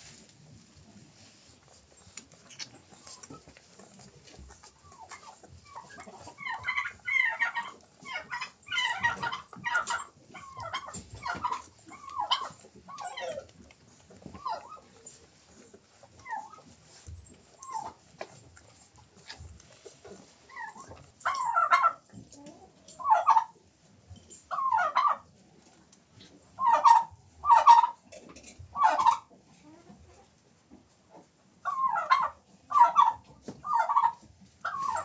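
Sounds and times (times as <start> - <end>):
dog whining and yelping: 1.5 - 23.5, 24.5 - 25.2, 31.6 - 35.0.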